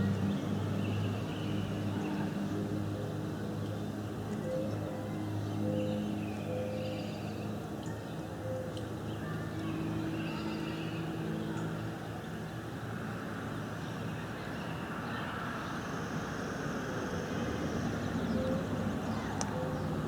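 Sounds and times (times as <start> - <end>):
vehicle engine low hum: 15.7 - 20.0.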